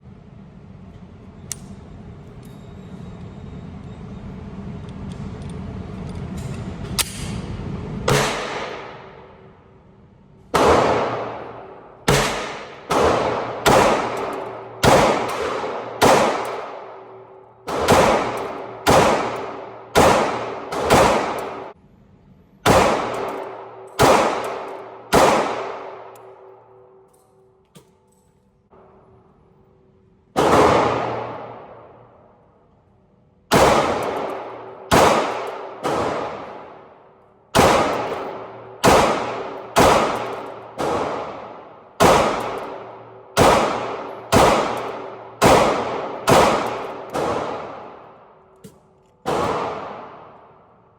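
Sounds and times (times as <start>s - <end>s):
pistol shots ringing out: 8.1s - 9.2s, 10.5s - 21.8s, 22.6s - 26.5s, 30.4s - 32.0s, 33.5s - 48.4s, 49.2s - 50.6s.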